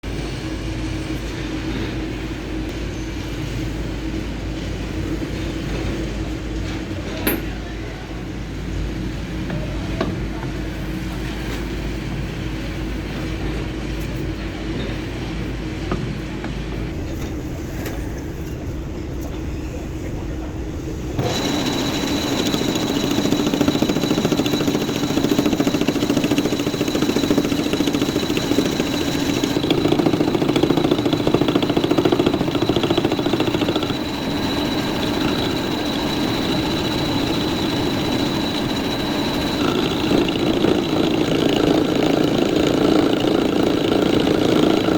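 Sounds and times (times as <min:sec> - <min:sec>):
machinery humming: 0:15.0 - 0:44.9
high machine whine: 0:16.9 - 0:44.9.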